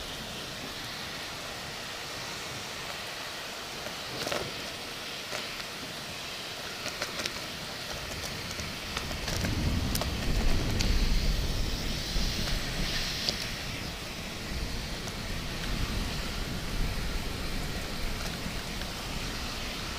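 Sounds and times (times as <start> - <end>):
steady rain hiss: 0.0 - 19.9
raindrop ticks: 7.9 - 11.5
thunder rumble: 8.7 - 19.9.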